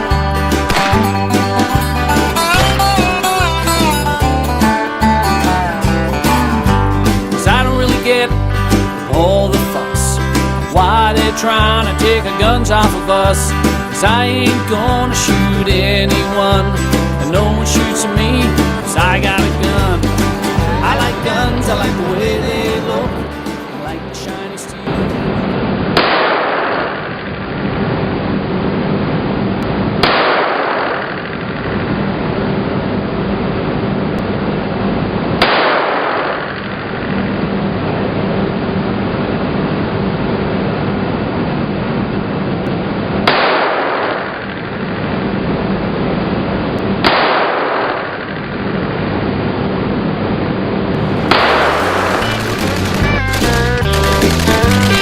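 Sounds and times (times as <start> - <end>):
gunshots with echo: 0.6 - 1.6, 24.8 - 27.6, 30.0 - 31.8, 35.4 - 37.1, 43.2 - 45.0, 47.0 - 48.8, 51.0 - 55.0
steady background noise: 22.7 - 55.0.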